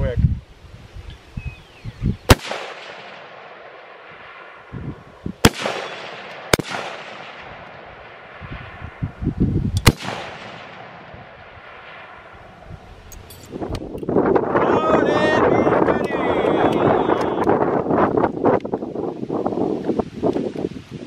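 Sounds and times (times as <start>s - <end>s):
rifle shots echoing: 2.3s - 9.0s, 9.8s - 12.7s.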